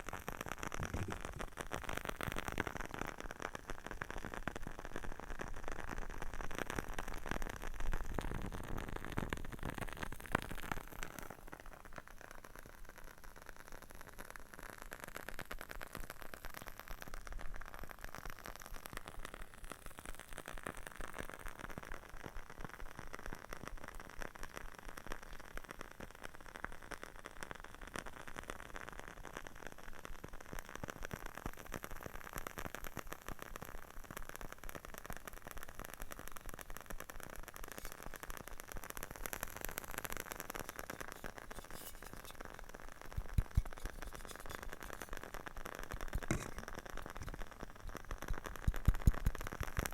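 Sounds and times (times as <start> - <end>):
candle wick crackling: 0.2 - 3.1, 32.4 - 49.9.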